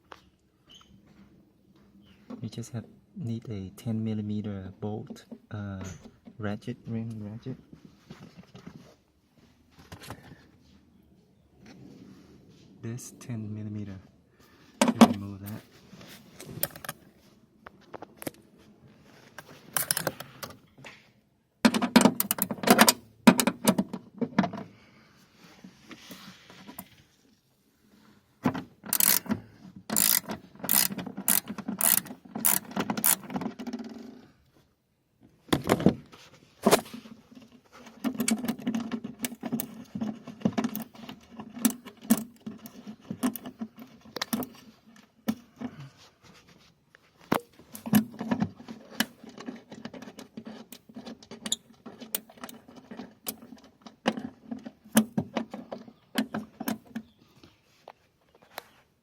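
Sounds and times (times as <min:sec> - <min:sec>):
ratchet wrench clicking: 0:19.8 - 0:20.2, 0:28.9 - 0:29.3, 0:29.9 - 0:33.3.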